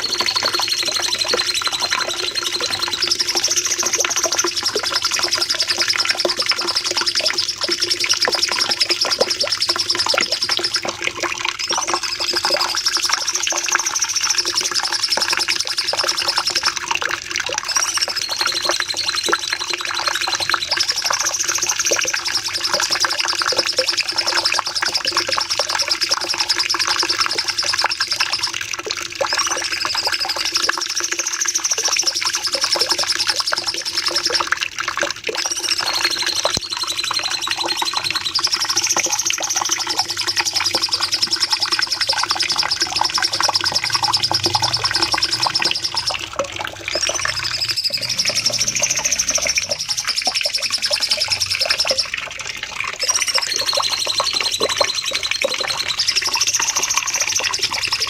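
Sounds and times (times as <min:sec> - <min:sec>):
songbird chattering song: 0:35.5 - 0:46.2.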